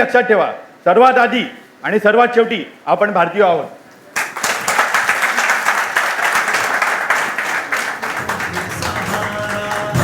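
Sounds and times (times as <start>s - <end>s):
crowd applauding: 4.2s - 10.0s
music: 8.1s - 10.0s.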